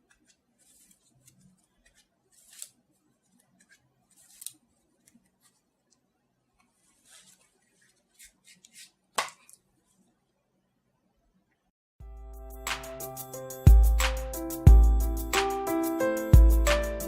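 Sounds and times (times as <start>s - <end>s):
playing cards rustling and flicking: 0.0s - 6.0s, 6.6s - 9.7s.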